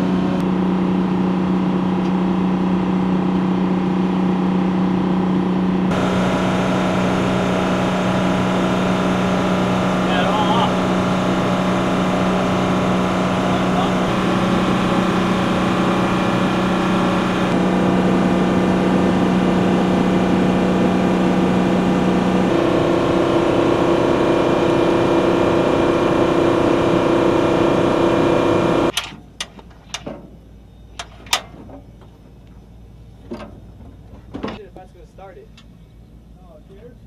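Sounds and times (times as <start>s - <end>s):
machine whine with held tones: 5.9s - 28.9s.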